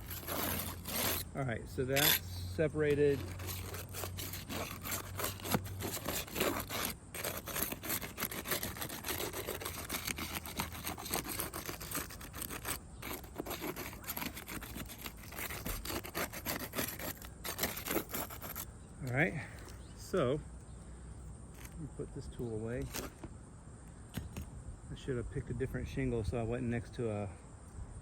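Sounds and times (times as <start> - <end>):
hand tool scraping shingles: 0.0 - 18.7, 22.8 - 23.3.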